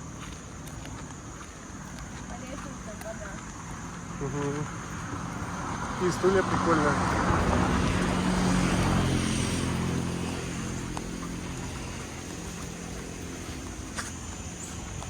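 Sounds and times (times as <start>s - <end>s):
vehicle engine passing by: 4.1s - 15.0s.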